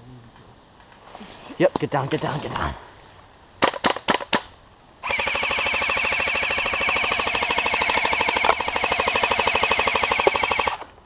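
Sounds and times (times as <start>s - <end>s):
airsoft gun full-auto burst: 5.0s - 10.9s
steady whine: 5.0s - 11.0s.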